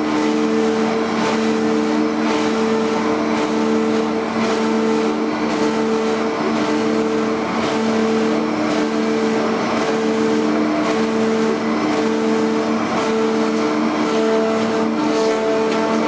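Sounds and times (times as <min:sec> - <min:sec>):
machine motor hum: 0:00.0 - 0:16.0.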